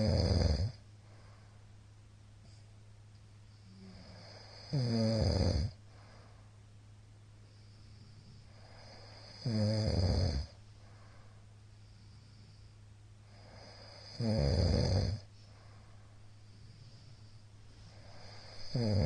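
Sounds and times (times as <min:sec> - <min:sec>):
man snoring loudly: 0:00.0 - 0:00.8, 0:03.7 - 0:05.8, 0:08.6 - 0:10.5, 0:13.3 - 0:15.2, 0:18.0 - 0:19.0
quiet breathing: 0:00.0 - 0:19.0.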